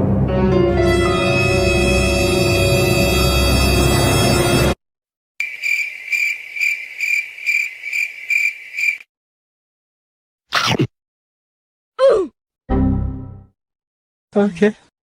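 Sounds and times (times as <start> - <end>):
cricket chirping: 5.4 - 9.1.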